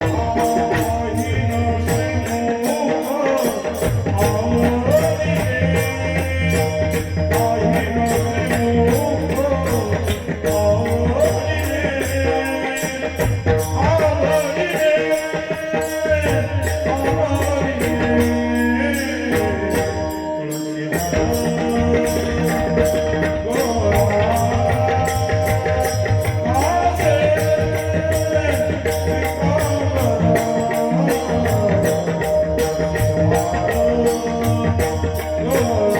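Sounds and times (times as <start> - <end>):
jingling percussion: 0.0 - 35.9
man singing devotional song: 0.0 - 35.9
sustained accompaniment: 0.0 - 35.9.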